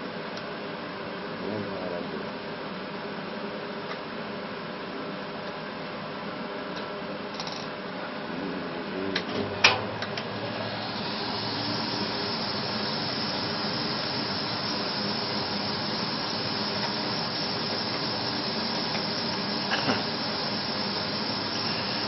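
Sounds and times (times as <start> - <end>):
steady hiss: 8.5 - 22.0.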